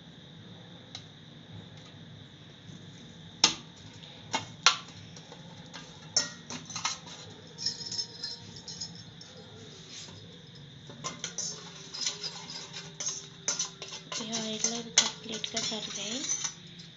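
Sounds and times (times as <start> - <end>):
spoon clinking against a pan: 11.0 - 16.9.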